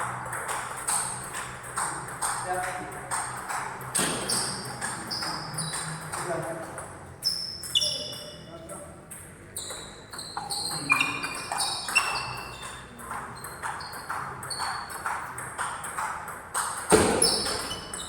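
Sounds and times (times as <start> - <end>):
table tennis ball hits: 0.0 - 8.5, 9.1 - 18.0.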